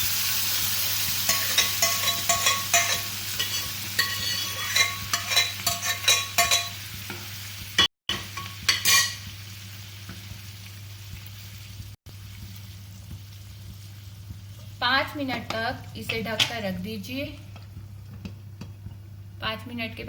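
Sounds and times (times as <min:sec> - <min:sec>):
food sizzling: 0:00.0 - 0:20.0
metal spoon scraping a pan: 0:01.3 - 0:07.3, 0:08.1 - 0:09.3.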